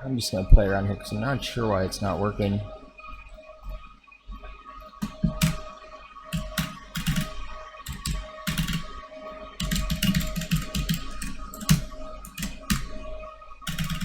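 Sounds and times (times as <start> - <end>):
steady background tone: 0.0 - 14.0
keyboard typing: 5.0 - 5.7, 6.3 - 8.9, 9.6 - 12.9, 13.7 - 14.0.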